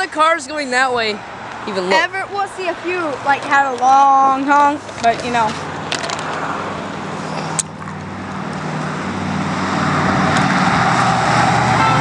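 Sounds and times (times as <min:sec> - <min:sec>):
car driving past: 0:05.6 - 0:12.0.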